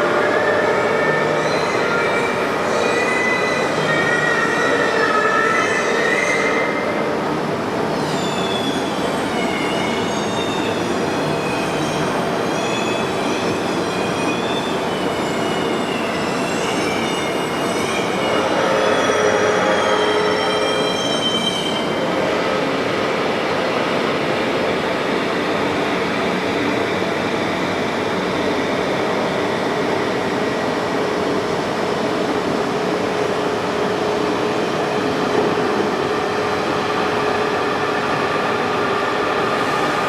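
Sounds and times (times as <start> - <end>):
high squeal: 8.0 - 22.0.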